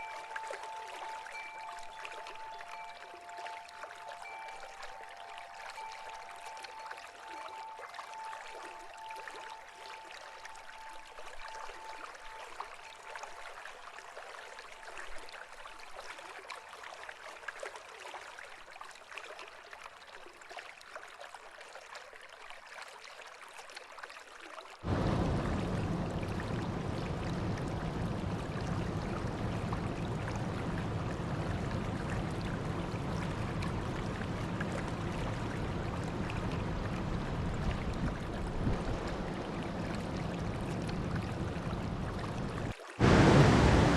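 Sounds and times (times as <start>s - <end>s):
river water rushing: 0.0s - 13.0s, 24.8s - 43.9s.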